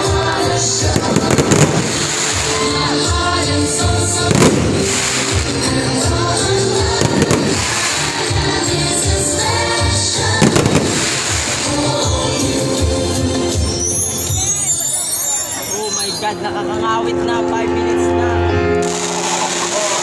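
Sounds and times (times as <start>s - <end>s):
fireworks bursting: 0.0s - 12.8s, 18.8s - 20.0s
loud music with beat and singing: 0.0s - 14.5s.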